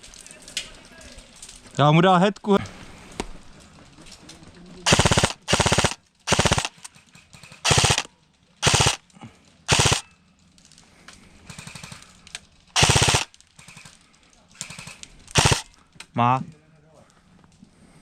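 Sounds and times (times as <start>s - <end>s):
airsoft gun bursts: 4.8s - 6.8s, 7.4s - 9.0s, 9.7s - 10.1s, 12.8s - 13.9s, 14.6s - 15.7s.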